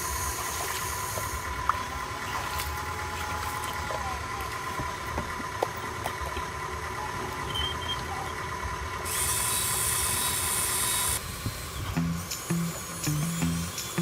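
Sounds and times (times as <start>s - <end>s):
toy electric motors whining: 9.0s - 14.0s
loud hiss: 9.1s - 14.0s.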